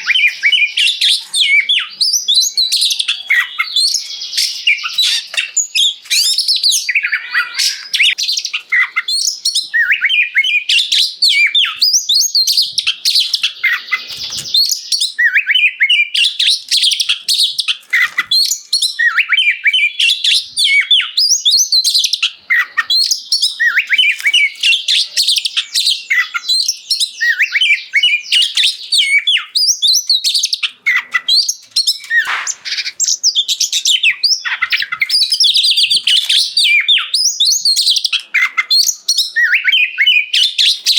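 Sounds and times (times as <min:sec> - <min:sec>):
bird singing whistles and chirps: 0:00.0 - 0:40.9.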